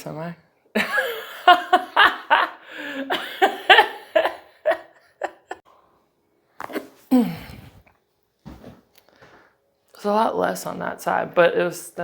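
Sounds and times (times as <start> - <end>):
person laughing: 0.8 - 5.6.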